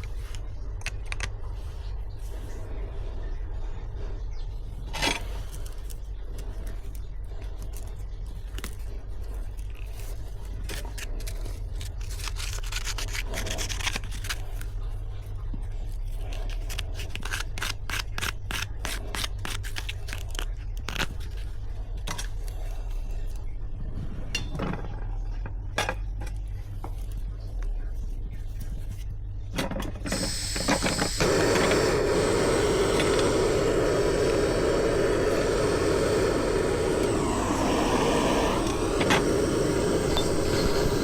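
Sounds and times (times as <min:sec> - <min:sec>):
steady low rumble: 0:20.6 - 0:41.0.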